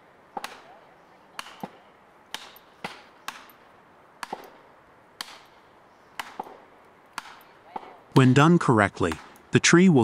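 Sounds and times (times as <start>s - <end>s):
hammer striking felling wedges: 0.4s - 0.7s, 1.4s - 3.6s, 4.2s - 4.6s, 5.2s - 5.6s, 6.2s - 9.6s.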